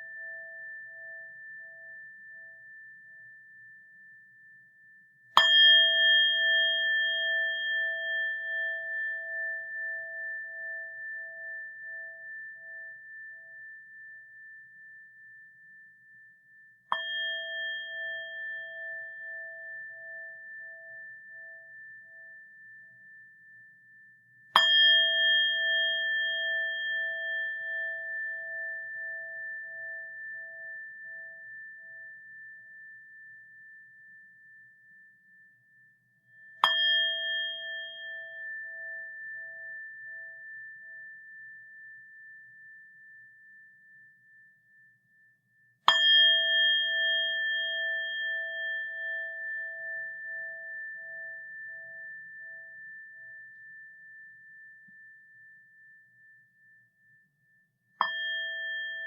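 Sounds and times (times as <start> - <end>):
metal bowl bell ringing: 5.4 - 15.7, 16.9 - 23.2, 24.6 - 33.4, 36.6 - 43.1, 45.9 - 55.9, 58.0 - 59.0.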